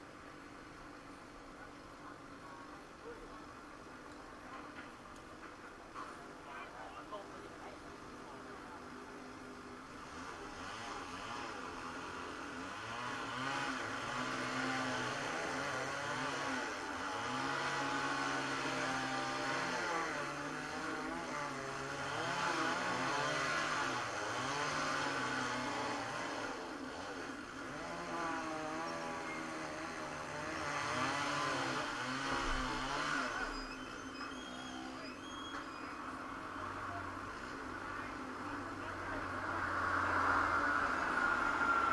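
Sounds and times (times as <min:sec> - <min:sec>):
engine revving: 0:12.8 - 0:26.6, 0:27.7 - 0:33.5.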